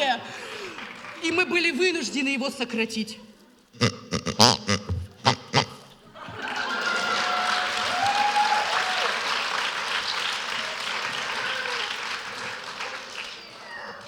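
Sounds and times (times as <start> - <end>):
audience applauding: 6.2 - 14.0.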